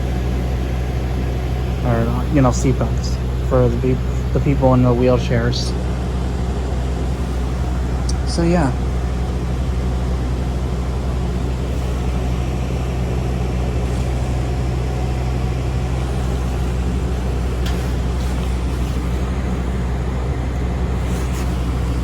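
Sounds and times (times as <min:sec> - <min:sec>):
bus engine drone: 0:00.0 - 0:22.0.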